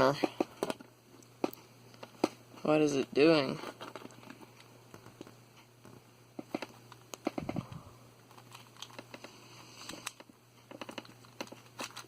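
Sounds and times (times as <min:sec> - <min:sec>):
puzzle cube plastic clicks: 0:08.3 - 0:12.0.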